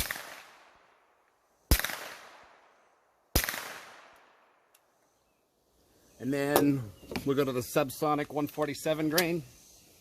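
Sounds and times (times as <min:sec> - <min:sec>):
suppressed pistol shots: 0:00.0 - 0:00.7, 0:01.7 - 0:02.6, 0:03.3 - 0:04.3.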